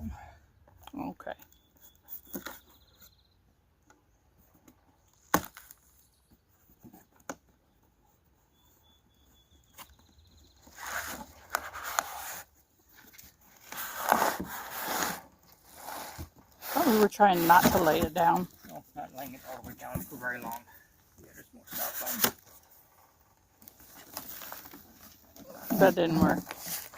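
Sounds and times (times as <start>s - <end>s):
packing tearing and scraping: 10.6s - 20.8s, 21.6s - 26.9s.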